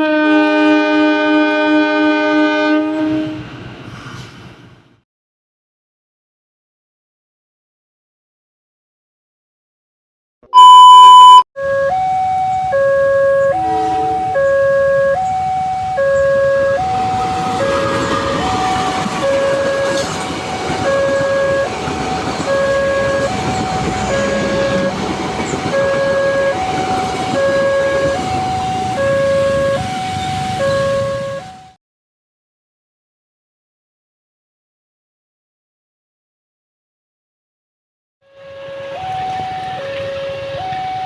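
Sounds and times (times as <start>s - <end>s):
two-tone crossing alarm: 10.5s - 31.8s, 38.3s - 41.0s.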